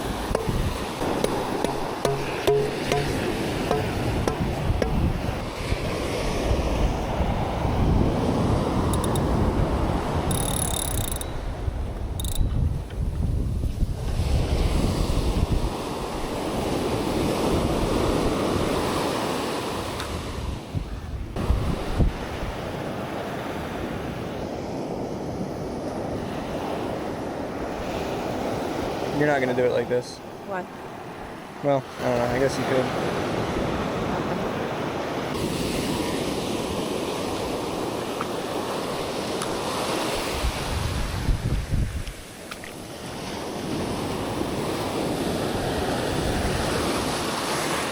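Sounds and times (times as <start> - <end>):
wind buffeting microphone: 0.0 - 2.1, 2.9 - 19.0, 19.8 - 29.0, 38.6 - 42.3
ocean surf washing up beach: 0.0 - 10.4, 13.3 - 47.9.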